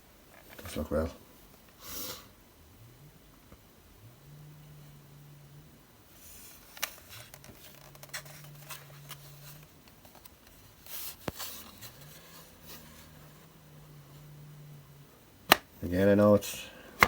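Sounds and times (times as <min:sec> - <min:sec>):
faint low hum: 0:00.0 - 0:17.0
model truck clicking and rustling: 0:06.7 - 0:11.9.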